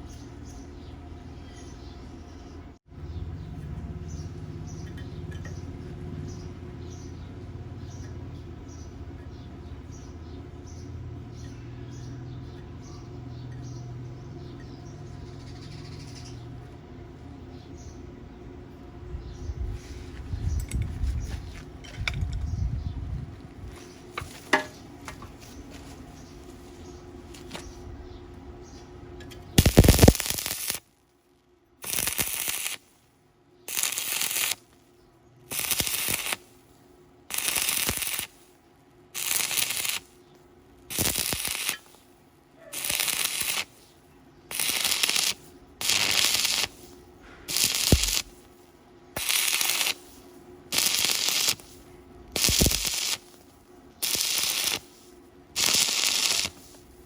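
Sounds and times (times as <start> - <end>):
welding arc crackling: 29.6 - 30.9, 31.8 - 33.0, 33.7 - 34.8, 35.5 - 36.6, 37.3 - 40.2, 40.9 - 42.0, 42.6 - 43.9, 44.5 - 48.5, 49.2 - 57.0.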